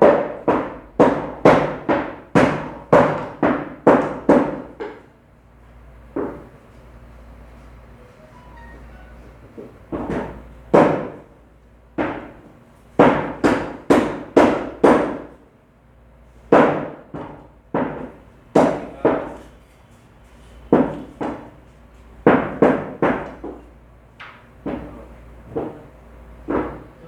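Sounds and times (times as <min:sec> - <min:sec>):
cleaver chopping meat on block: 0:00.0 - 0:05.0, 0:09.9 - 0:11.2, 0:12.0 - 0:12.4, 0:13.0 - 0:15.4, 0:16.5 - 0:19.5.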